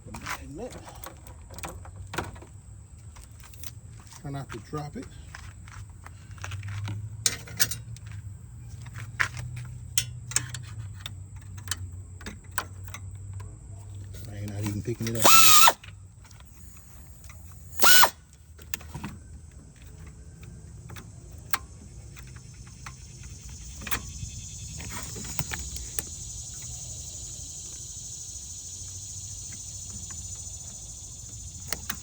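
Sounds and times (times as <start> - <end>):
air ratchet whining: 14.8 - 18.2.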